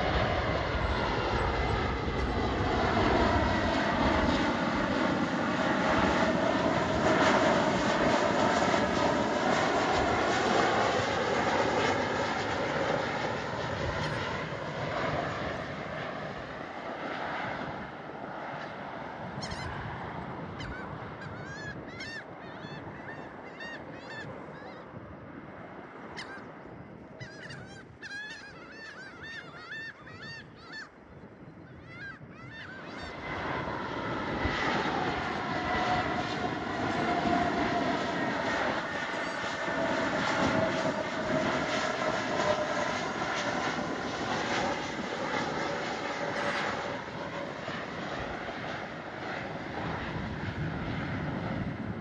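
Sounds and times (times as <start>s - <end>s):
jet engines whining: 0.0s - 30.4s, 32.2s - 52.0s
birds honking calls: 27.2s - 31.0s.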